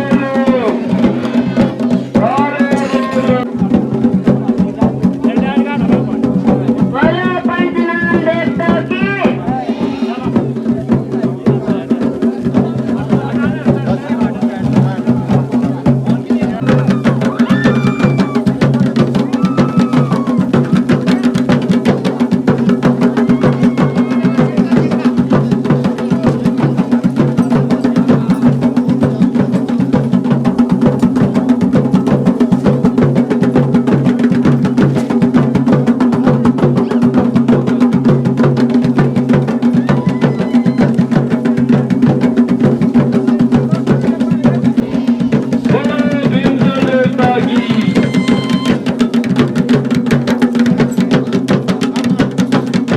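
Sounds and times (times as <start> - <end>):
fast folk drumming: 0.0 - 52.9.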